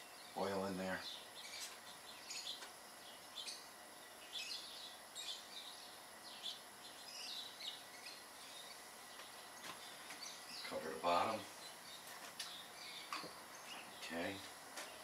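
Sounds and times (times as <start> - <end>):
faint bird chirps: 0.0 - 15.0
low steady hiss: 0.0 - 15.0.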